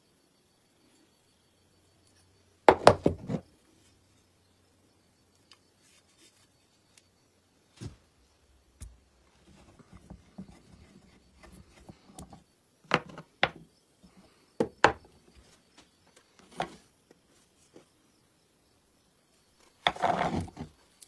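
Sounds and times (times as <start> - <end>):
rubbing and scraping on metal parts: 19.8 - 20.8.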